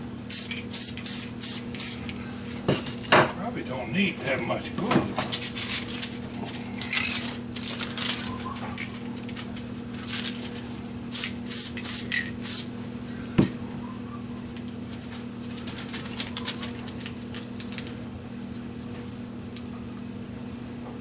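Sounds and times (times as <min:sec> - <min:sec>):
steady low hum: 0:00.0 - 0:21.0
aerosol spray can hissing: 0:00.3 - 0:02.1, 0:11.1 - 0:12.7.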